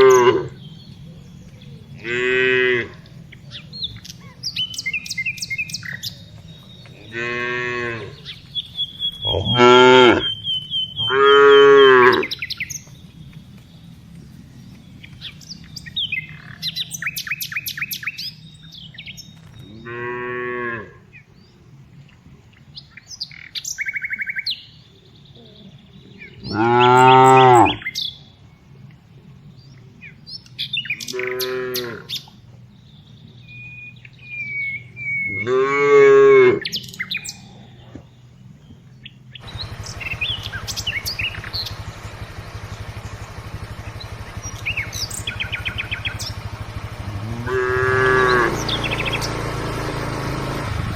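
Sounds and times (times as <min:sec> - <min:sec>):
cows mooing: 0:00.0 - 0:00.8, 0:01.9 - 0:03.3, 0:06.8 - 0:08.4, 0:09.1 - 0:10.4, 0:11.0 - 0:12.6, 0:19.6 - 0:21.1, 0:26.4 - 0:27.9, 0:31.1 - 0:32.3, 0:35.2 - 0:36.8, 0:42.0 - 0:50.9
small birds chirping: 0:00.0 - 0:20.1, 0:21.1 - 0:50.9.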